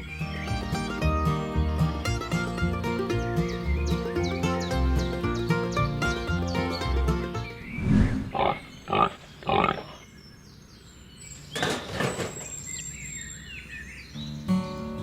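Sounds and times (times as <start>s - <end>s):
animal calling in rough bursts: 8.3s - 10.0s.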